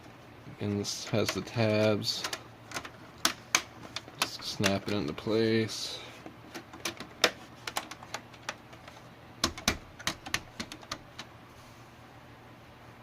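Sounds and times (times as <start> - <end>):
computer case tabs clicking: 0.8 - 5.2, 6.3 - 11.3.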